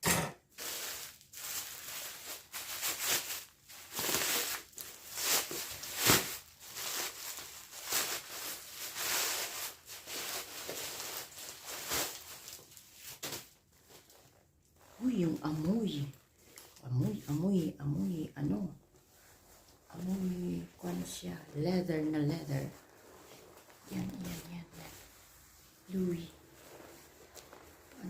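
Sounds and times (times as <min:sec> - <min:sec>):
packaging crinkling and tearing: 0:00.5 - 0:16.8, 0:22.7 - 0:25.3, 0:26.3 - 0:28.0.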